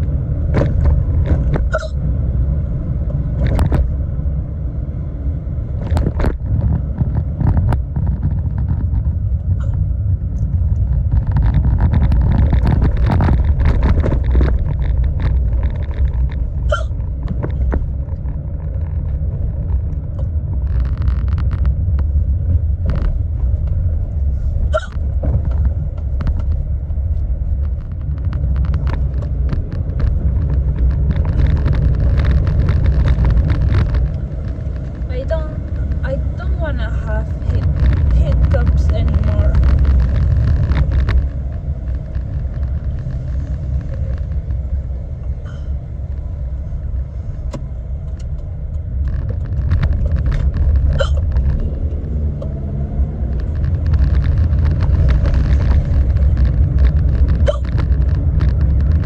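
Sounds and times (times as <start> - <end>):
car cabin rumble: 0.0 - 59.0
woman hiccuping: 1.7 - 2.0, 24.7 - 25.0, 51.0 - 51.2, 57.4 - 57.7.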